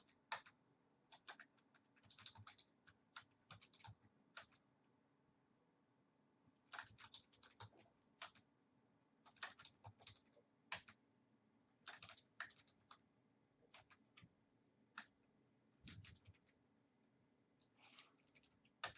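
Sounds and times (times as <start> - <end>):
faint typing on keyboard: 0.0 - 4.7, 6.6 - 8.5, 9.2 - 11.0, 11.8 - 16.6, 17.6 - 18.9.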